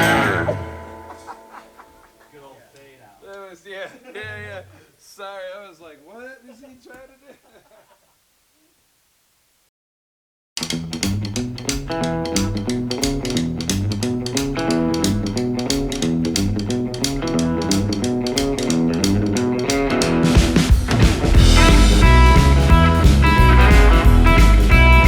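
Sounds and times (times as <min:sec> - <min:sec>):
rock music with electric guitar: 0:00.0 - 0:02.0, 0:10.6 - 0:25.0.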